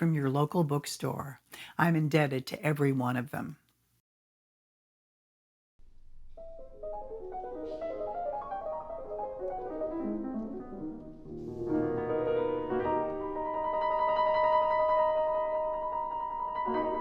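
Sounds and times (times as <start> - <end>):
solo piano playing: 6.4 - 17.0.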